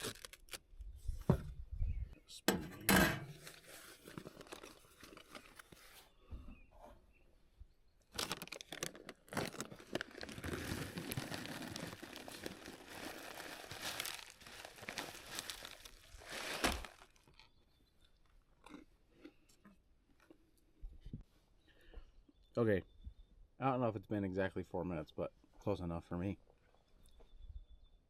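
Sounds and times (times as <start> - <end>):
granola packet crinkling and crunching: 0.0 - 0.6, 3.4 - 5.8, 8.1 - 17.6.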